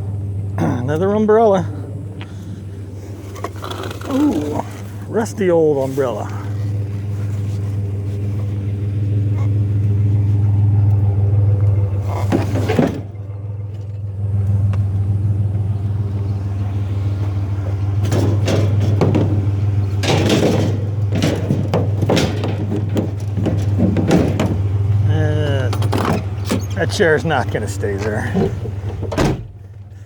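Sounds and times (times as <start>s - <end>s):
truck engine running: 0.0s - 30.0s
short knocks and rattles: 9.3s - 14.9s, 16.3s - 29.9s.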